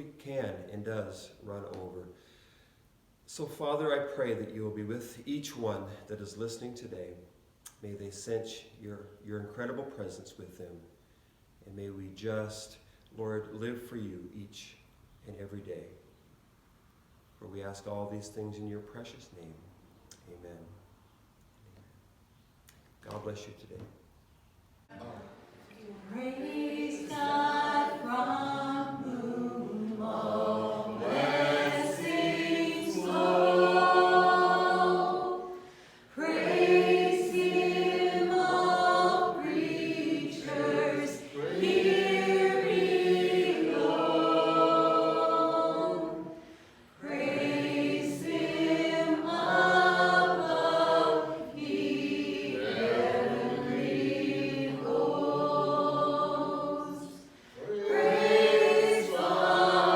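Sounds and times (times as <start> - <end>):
choir singing slow song: 24.9 - 59.9.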